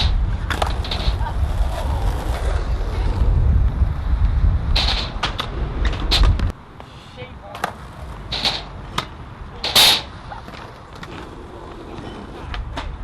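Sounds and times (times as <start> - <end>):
skateboard scrape: 0.0 - 4.0, 7.7 - 13.0
skateboard clacks: 0.0 - 6.6
skateboard wheel rumble: 0.0 - 6.6, 7.6 - 13.0.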